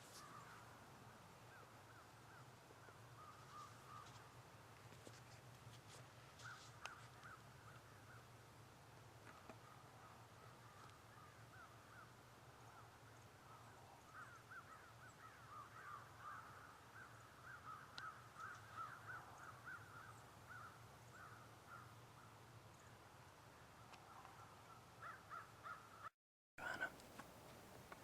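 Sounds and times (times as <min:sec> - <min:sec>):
distant chorus of animal calls: 0:24.1 - 0:27.2.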